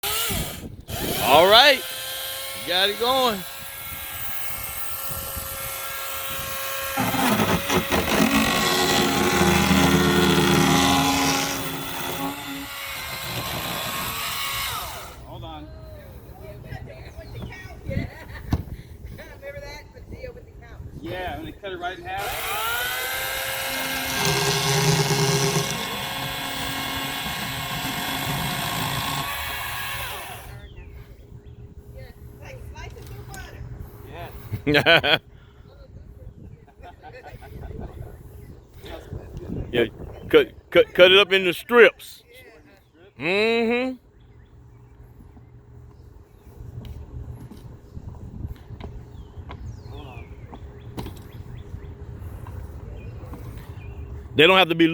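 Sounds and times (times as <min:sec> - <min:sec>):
motor spinning down: 0:00.0 - 0:15.2, 0:22.2 - 0:30.6
battery chainsaw cutting: 0:00.0 - 0:15.3, 0:22.2 - 0:30.6.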